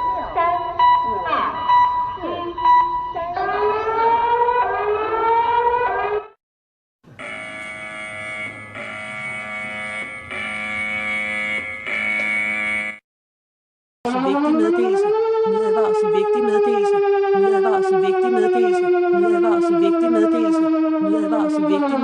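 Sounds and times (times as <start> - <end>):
pulsing electronic alert chord: 7.1 - 13.0
rising siren-like electronic tone: 7.1 - 13.0.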